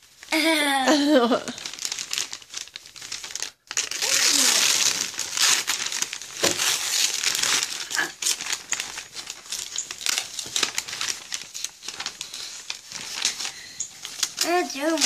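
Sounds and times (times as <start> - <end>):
wrapping paper crinkling and tearing: 0.0 - 15.0.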